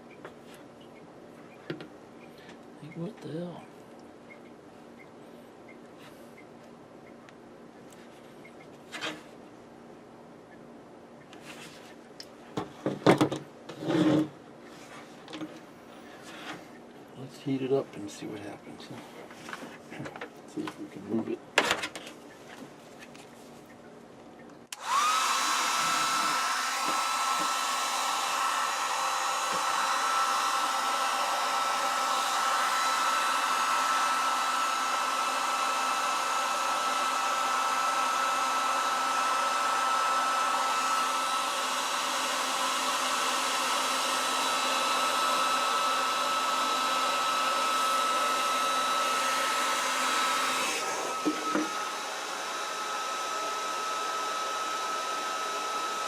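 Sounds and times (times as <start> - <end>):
hot-air blower hissing and whining: 24.7 - 56.0.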